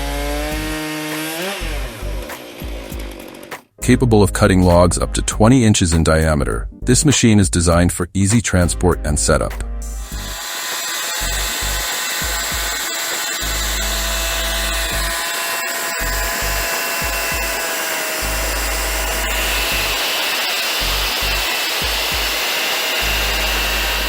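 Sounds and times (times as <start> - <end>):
power saw cutting wood: 0.0 - 3.8, 9.3 - 24.0
background music: 0.0 - 20.1.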